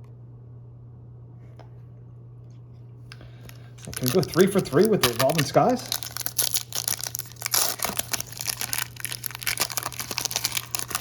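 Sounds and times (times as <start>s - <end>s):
steady low hum: 0.0s - 11.0s
foil wrapper crinkling and tearing: 3.5s - 11.0s.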